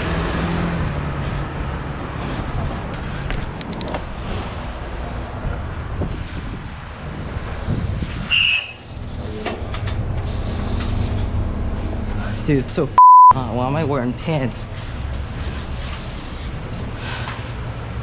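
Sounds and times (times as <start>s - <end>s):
street traffic: 0.0s - 18.0s
wind buffeting microphone: 1.3s - 8.5s.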